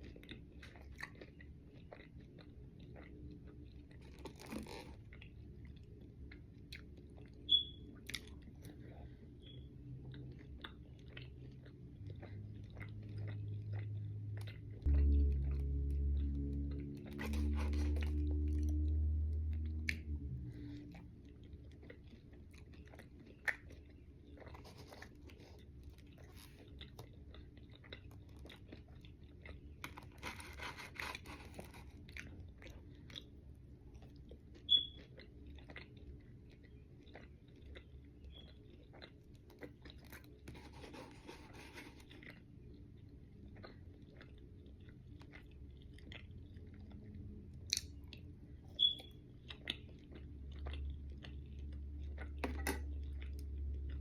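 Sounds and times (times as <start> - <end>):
close-up chewing: 0.0 - 54.0
low steady hum: 0.0 - 54.0.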